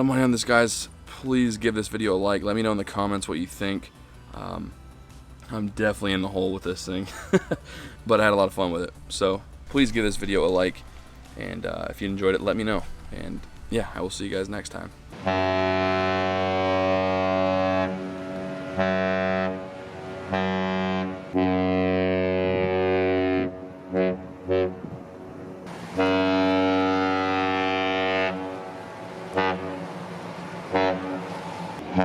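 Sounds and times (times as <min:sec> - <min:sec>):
ship horn blasts: 0:15.1 - 0:32.0
short horn toots: 0:15.2 - 0:25.0, 0:26.0 - 0:28.7, 0:29.3 - 0:29.9, 0:30.7 - 0:32.0.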